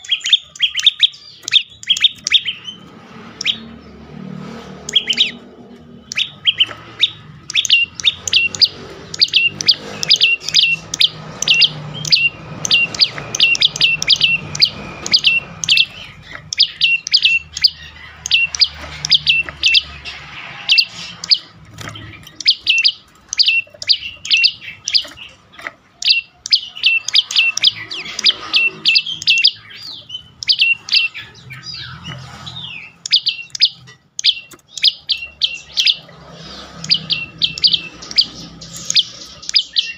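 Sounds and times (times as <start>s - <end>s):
bird chip notes: 4.7s - 39.9s.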